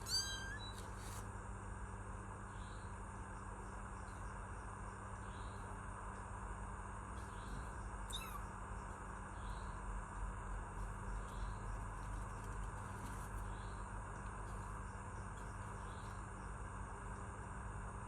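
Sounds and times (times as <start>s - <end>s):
kitten mewing: 0.0s - 0.8s, 8.1s - 8.5s
crickets chirping: 7.3s - 17.0s.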